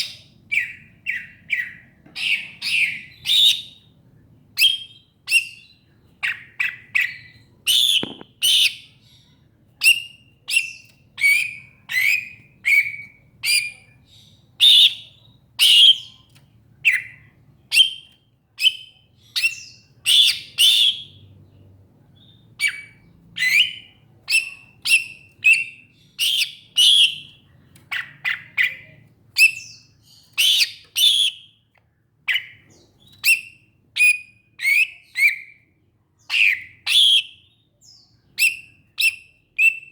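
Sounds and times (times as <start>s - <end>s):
bird whistling chirps: 4.6s - 8.9s.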